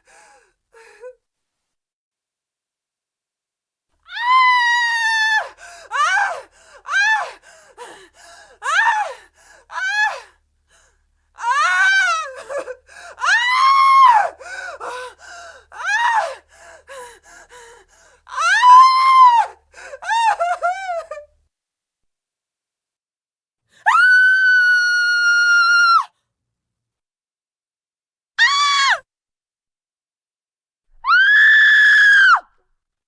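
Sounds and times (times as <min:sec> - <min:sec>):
woman screaming: 0:04.1 - 0:06.4, 0:18.4 - 0:20.4, 0:23.9 - 0:26.1
gasping breaths: 0:05.4 - 0:11.0, 0:14.3 - 0:18.3.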